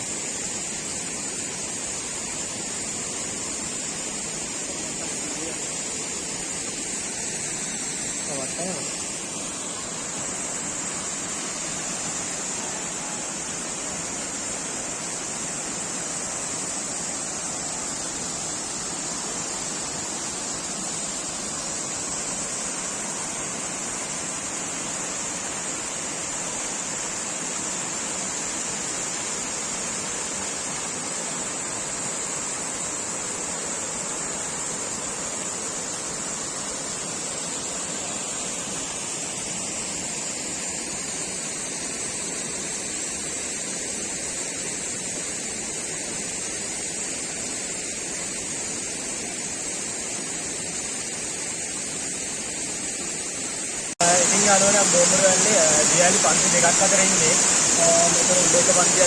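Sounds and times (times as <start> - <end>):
waterfall rushing: 0.1 - 41.3, 53.7 - 59.0.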